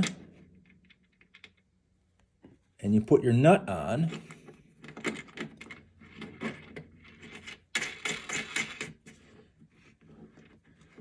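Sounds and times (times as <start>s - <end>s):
small metal clicks and rattles: 0.0s - 1.7s, 4.1s - 9.1s.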